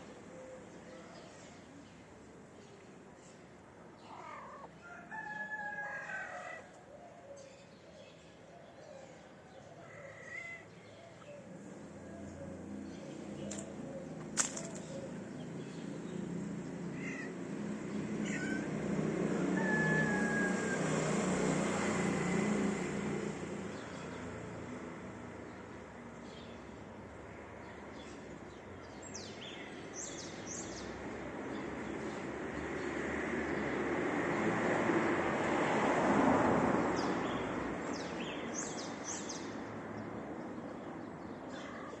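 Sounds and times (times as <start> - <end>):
vehicle passing: 11.5 - 25.4, 31.8 - 38.5.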